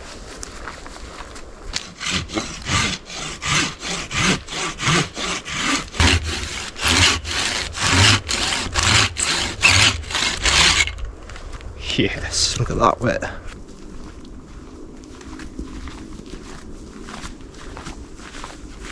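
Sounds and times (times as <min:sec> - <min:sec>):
hand saw cutting wood: 0:01.7 - 0:11.0.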